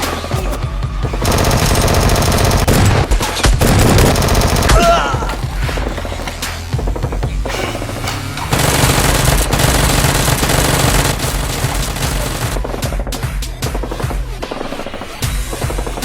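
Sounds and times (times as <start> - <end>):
background music: 0.0 - 16.0
rapid automatic gunfire: 1.2 - 4.9, 8.5 - 16.0.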